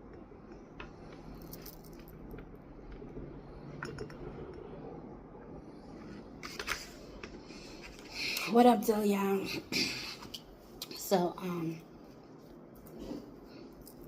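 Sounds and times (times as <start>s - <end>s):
faint clicks and clinks: 0.0s - 4.7s
low steady hum: 0.0s - 14.0s.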